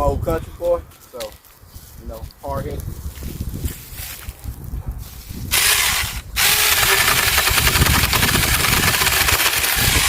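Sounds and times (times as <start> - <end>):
chainsaw buzzing whir: 5.5 - 10.0.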